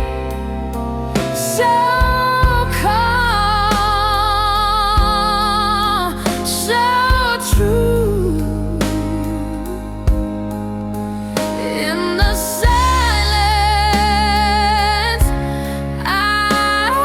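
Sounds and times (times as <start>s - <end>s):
slow soul blues ballad: 0.0s - 17.0s.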